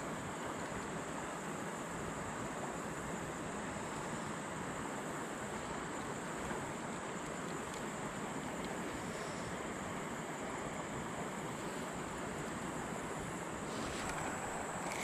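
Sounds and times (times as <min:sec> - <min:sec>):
creek water running over riffles: 0:00.0 - 0:15.0.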